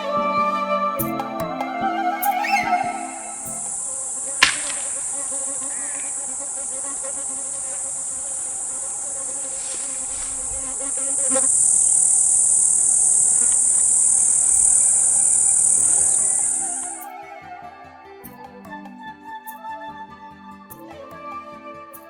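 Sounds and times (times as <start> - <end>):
insects buzzing: 1.0 - 17.2
sharp click: 3.3 - 6.3.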